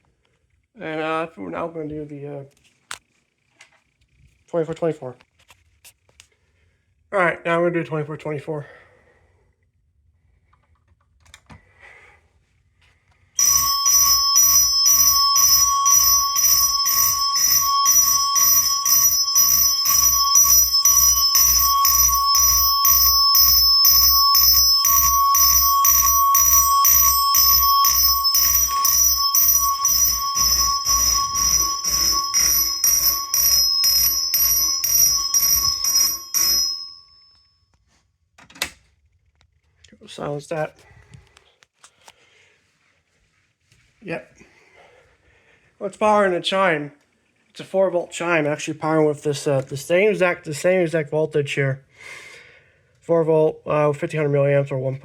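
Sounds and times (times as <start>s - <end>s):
fire alarm chime ringing: 13.4s - 37.6s.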